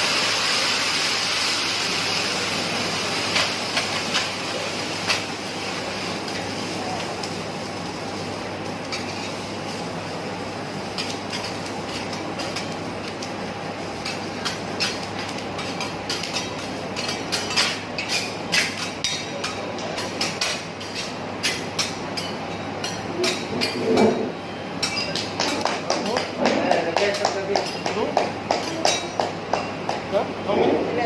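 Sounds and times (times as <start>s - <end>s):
sizzling hiss: 0.0s - 19.6s
spatulas clacking on griddle: 8.8s - 9.4s, 10.9s - 13.3s, 14.0s - 24.2s, 24.8s - 30.1s.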